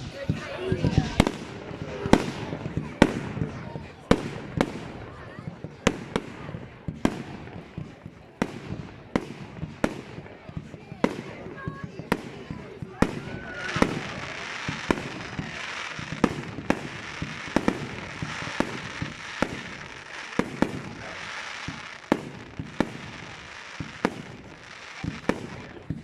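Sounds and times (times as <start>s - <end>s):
fireworks bangs: 0.0s - 26.0s
fireworks crackling hiss: 0.0s - 26.0s.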